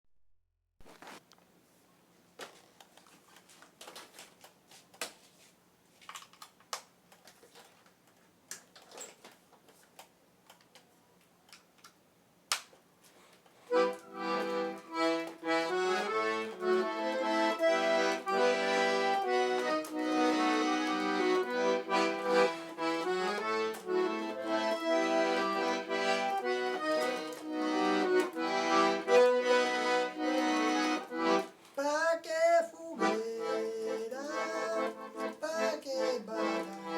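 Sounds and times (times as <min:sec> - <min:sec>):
accordion playing: 0:13.7 - 0:36.9.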